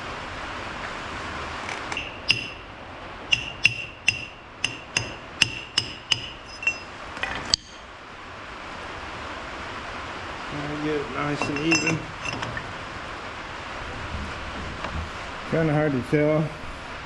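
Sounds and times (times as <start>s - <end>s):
hammer tapping metal: 1.8s - 2.7s, 3.3s - 7.9s, 11.2s - 12.8s.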